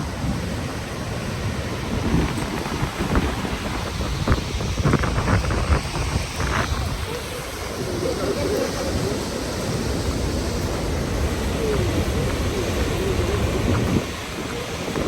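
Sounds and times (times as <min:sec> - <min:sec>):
waterfall rushing: 0:00.0 - 0:15.0
wind buffeting microphone: 0:00.0 - 0:15.0.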